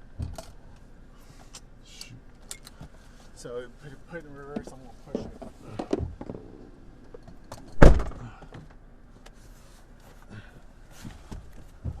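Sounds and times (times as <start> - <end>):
car door slamming: 7.8 - 8.4.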